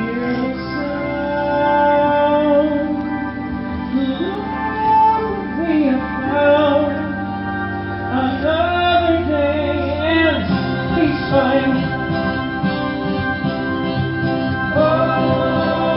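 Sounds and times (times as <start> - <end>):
person singing long notes: 0.0 - 3.2, 14.7 - 15.9
organ-like keyboard chords: 0.0 - 15.9.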